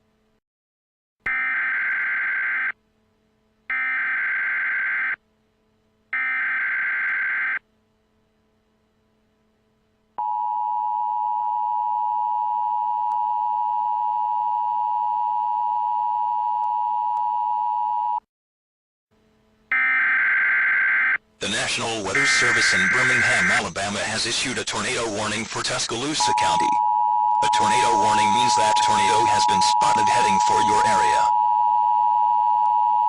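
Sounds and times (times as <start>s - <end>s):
warbling data tones: 22.0s - 23.7s.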